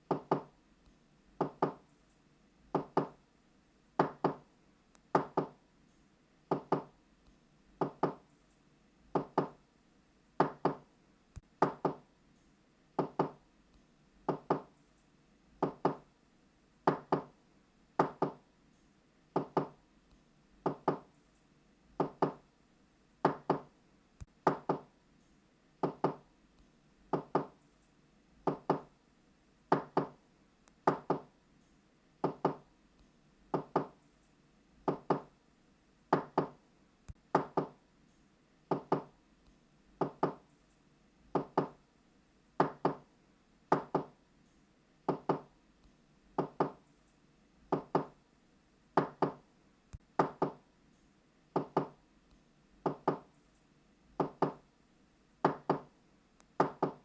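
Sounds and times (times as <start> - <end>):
double knocks on a door: 4.0 - 4.4, 6.5 - 6.9, 9.2 - 9.6, 10.4 - 10.8, 11.6 - 12.0, 16.9 - 17.3, 24.5 - 24.8.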